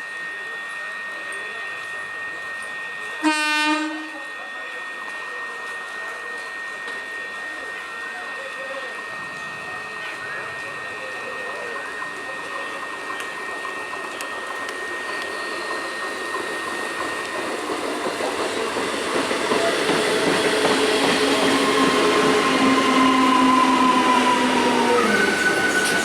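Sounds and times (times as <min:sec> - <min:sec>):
electric train passing: 0:00.0 - 0:26.0
whining electric traction gear: 0:11.8 - 0:26.0.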